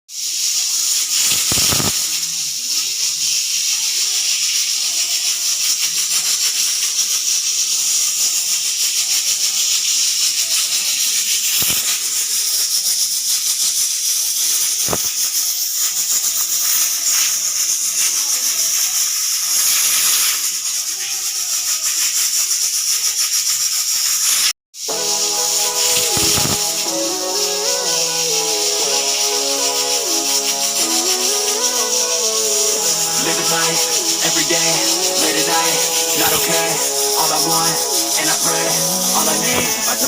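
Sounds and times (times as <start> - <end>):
pressure cooker whistle hissing: 0.1 - 40.0.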